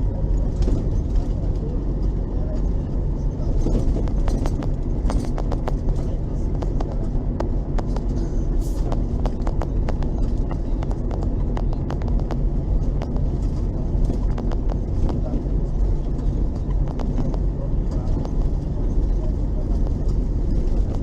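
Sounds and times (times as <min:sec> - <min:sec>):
bus engine droning: 0:00.0 - 0:21.0
irregular clicks and rattles: 0:03.5 - 0:21.0.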